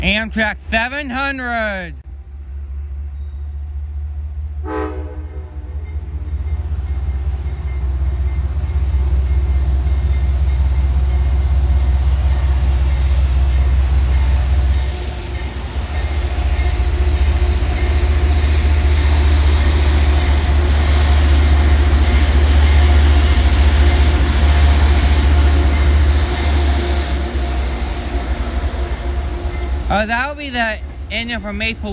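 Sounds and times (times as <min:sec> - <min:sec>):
diesel locomotive engine rumble: 0:00.0 - 0:31.9
train horn toot: 0:04.6 - 0:05.9.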